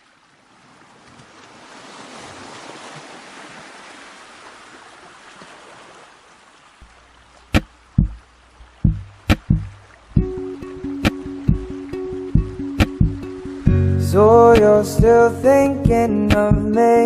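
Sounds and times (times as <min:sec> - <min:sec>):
punchy pop drum hits: 0:08.0 - 0:08.2, 0:08.8 - 0:10.4, 0:12.4 - 0:13.2.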